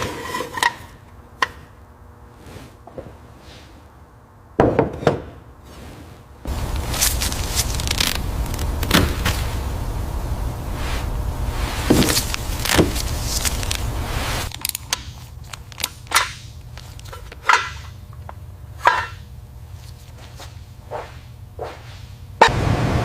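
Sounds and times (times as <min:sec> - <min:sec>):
low hum: 0:06.5 - 0:14.5
tools knocking and clicking: 0:14.8 - 0:19.2.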